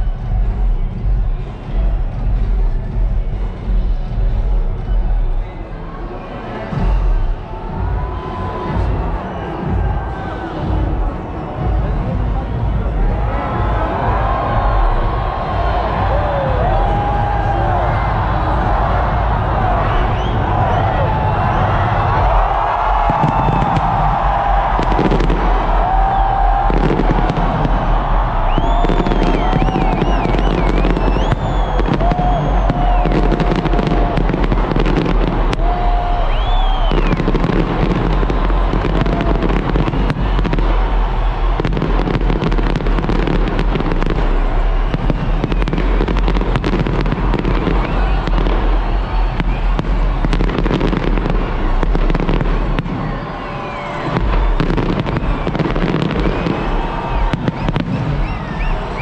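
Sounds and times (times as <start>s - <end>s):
fireworks booming and crackling: 6.3s - 59.0s
fireworks whistling: 19.2s - 59.0s.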